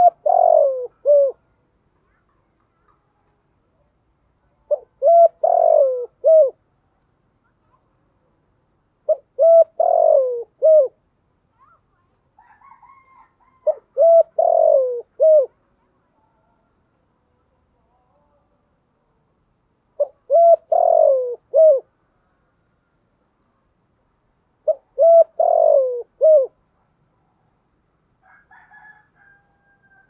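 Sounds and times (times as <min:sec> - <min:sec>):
dove cooing: 0:00.0 - 0:01.5, 0:04.7 - 0:06.6, 0:09.1 - 0:11.0, 0:12.4 - 0:15.6, 0:20.0 - 0:21.9, 0:24.6 - 0:26.6.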